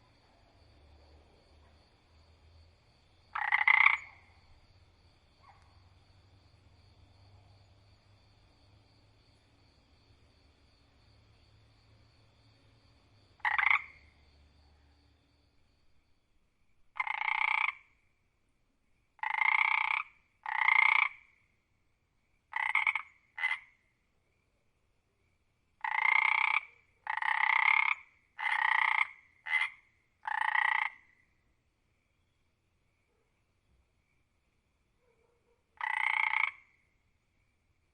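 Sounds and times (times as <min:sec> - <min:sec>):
frog croaking: 0:03.1 - 0:06.0, 0:13.3 - 0:14.4, 0:16.9 - 0:18.0, 0:19.2 - 0:21.4, 0:22.5 - 0:23.9, 0:25.8 - 0:31.3, 0:35.8 - 0:37.0.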